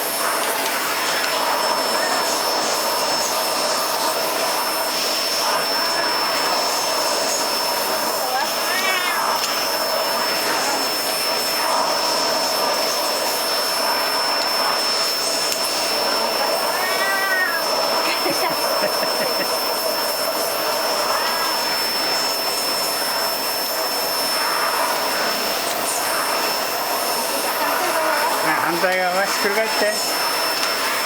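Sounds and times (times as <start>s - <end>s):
vacuum cleaner whining: 0.0s - 31.0s
cat meowing: 16.7s - 17.7s.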